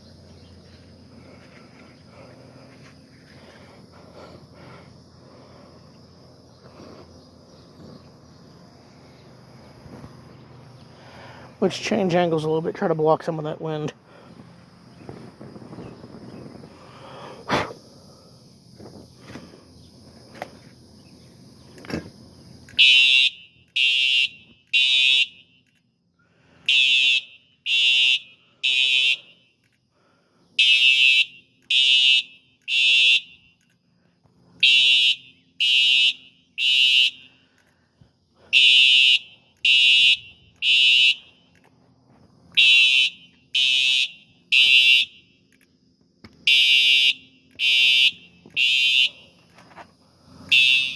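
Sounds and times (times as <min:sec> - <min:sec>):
wind noise: 0:14.3 - 0:17.8
fire alarm beeps: 0:34.6 - 0:37.2, 0:38.6 - 0:41.2, 0:42.6 - 0:45.2, 0:46.4 - 0:49.4, 0:50.5 - 0:50.9.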